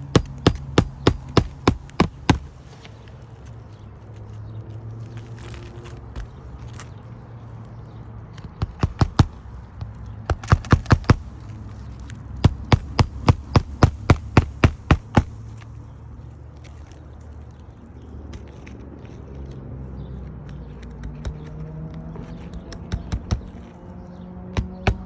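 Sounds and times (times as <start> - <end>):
hammer striking roof shingles: 0.0 - 2.8, 8.5 - 11.5, 12.4 - 15.5, 22.4 - 23.7, 24.5 - 25.0.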